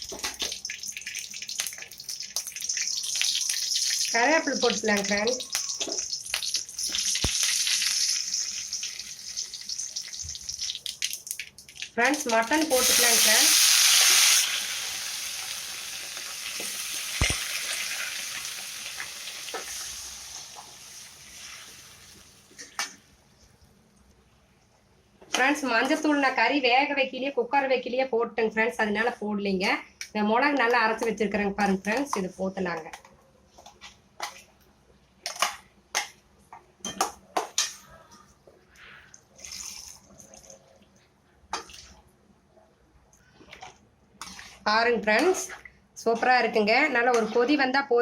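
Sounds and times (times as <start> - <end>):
meat sizzling in hot oil: 0.0 - 22.6.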